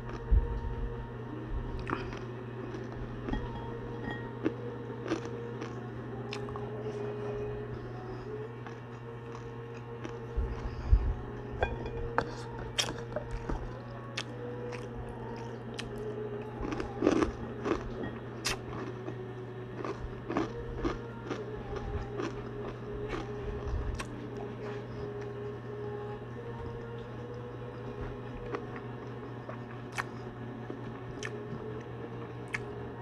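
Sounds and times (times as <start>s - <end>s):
person chewing crispy food: 0.1s - 0.3s, 1.8s - 3.5s, 4.4s - 6.8s, 8.6s - 11.0s, 11.6s - 25.4s, 28.3s - 31.8s, 32.4s - 32.8s.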